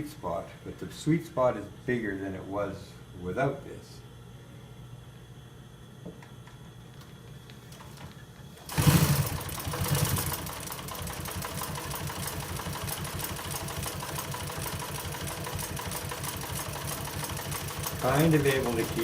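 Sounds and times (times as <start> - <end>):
sewing machine motor hum: 8.6 - 19.0
sewing machine stitching: 8.7 - 19.0.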